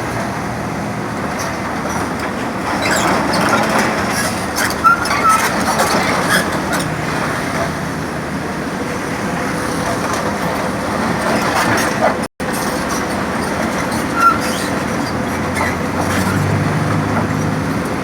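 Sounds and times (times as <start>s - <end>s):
excavator engine hum: 0.0s - 18.0s
metallic squeals: 2.8s - 6.9s, 12.5s - 17.6s.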